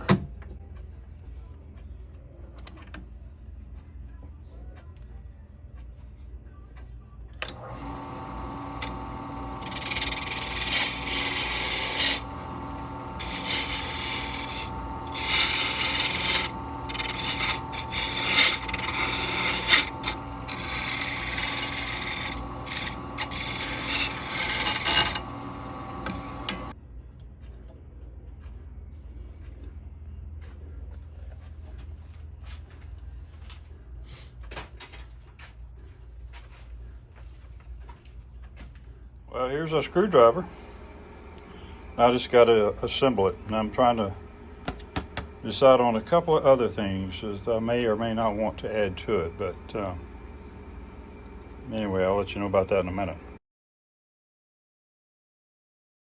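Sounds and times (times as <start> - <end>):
small power tool motor: 7.5 - 26.7
abrasive sanding: 9.6 - 26.7.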